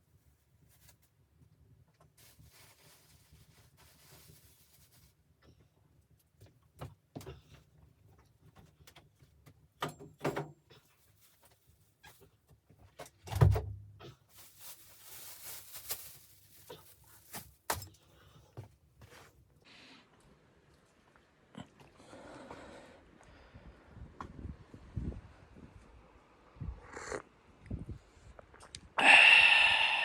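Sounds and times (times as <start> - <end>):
scraping and rustling: 14.2 - 17.7.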